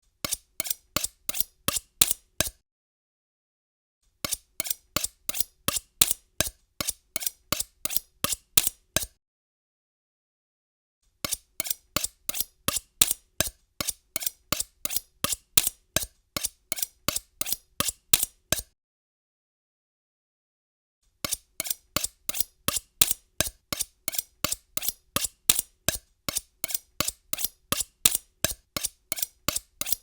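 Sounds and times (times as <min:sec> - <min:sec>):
knife being sharpened: 0:00.2 - 0:02.6, 0:04.3 - 0:09.2, 0:11.3 - 0:18.8, 0:21.2 - 0:30.0.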